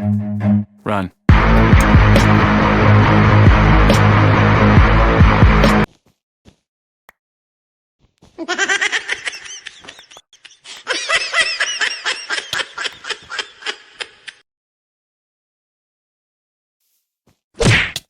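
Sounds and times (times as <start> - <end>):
high-pitched laughter: 8.4 - 14.4.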